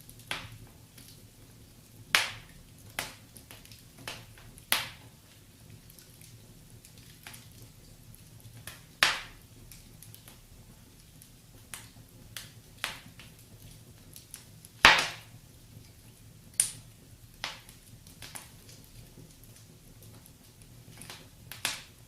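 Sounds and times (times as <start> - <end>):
faint low hiss: 0.0 - 22.0
wood fire crackling and popping: 0.0 - 22.0.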